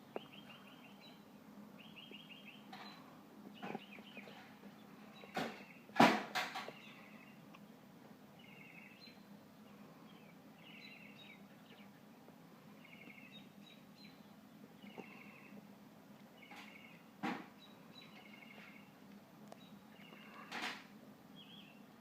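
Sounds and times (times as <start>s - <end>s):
faint steady hum: 0.0s - 22.0s
small bird chirping: 0.1s - 5.9s, 8.4s - 9.2s, 12.8s - 15.6s, 16.3s - 20.6s.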